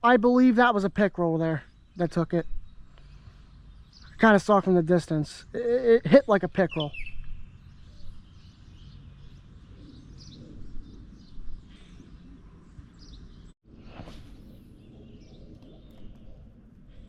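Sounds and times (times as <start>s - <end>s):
bird chirps: 0.7s - 4.8s, 6.2s - 13.5s
low steady rumble: 14.2s - 17.0s.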